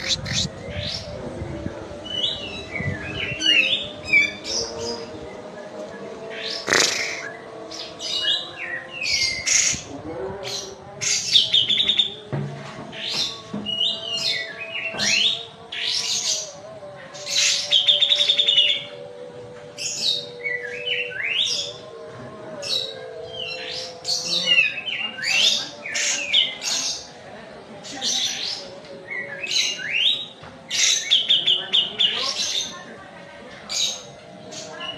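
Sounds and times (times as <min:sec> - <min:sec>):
bird chirping and trilling: 0:00.0 - 0:01.2, 0:06.3 - 0:12.1.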